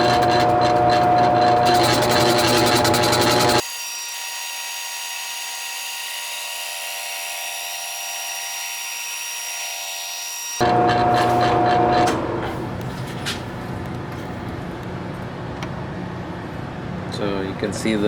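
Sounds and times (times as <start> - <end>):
high-pitched machine whine: 0.0 - 3.6
machine tool cutting metal: 0.0 - 9.8, 10.5 - 12.2.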